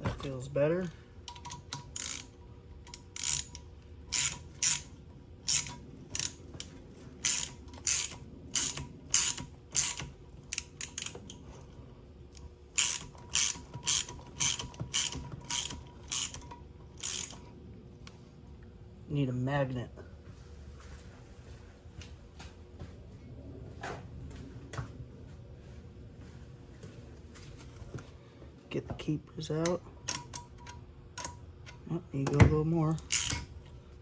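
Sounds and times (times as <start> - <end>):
ratchet wrench clicking: 1.2 - 11.2, 12.8 - 17.4, 32.9 - 33.6.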